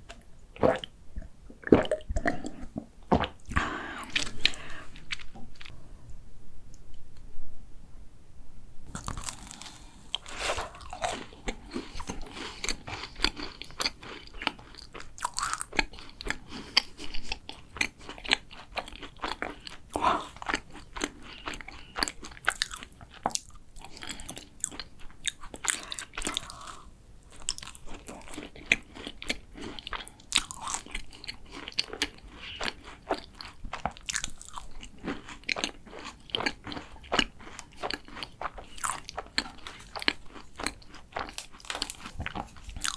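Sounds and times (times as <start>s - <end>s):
biting and chewing macaron: 8.9s - 42.9s.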